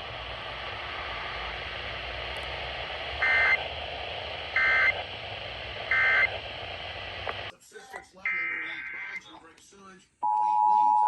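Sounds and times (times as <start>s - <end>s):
radio hiss: 0.0s - 9.9s
digital data bursts: 3.2s - 3.8s, 4.5s - 7.4s.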